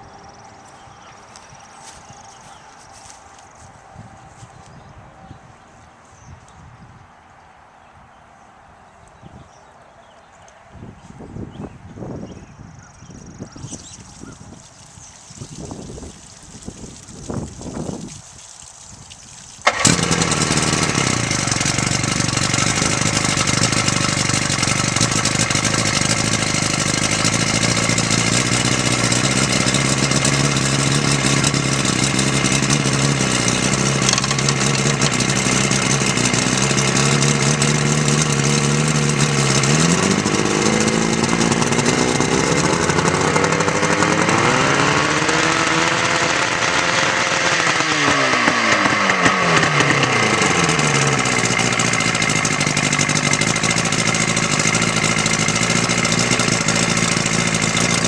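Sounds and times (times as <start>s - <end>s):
outboard motor starting and idling: 13.4s - 58.0s
outboard motor revving: 19.5s - 58.0s.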